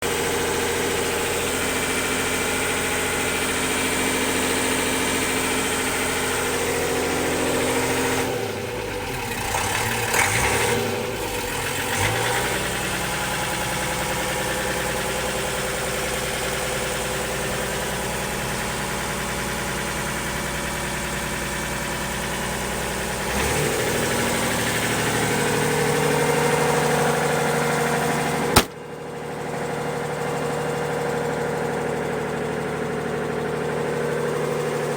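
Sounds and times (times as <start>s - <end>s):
diesel engine idling: 0.0s - 34.9s
sharp click: 28.6s - 28.8s.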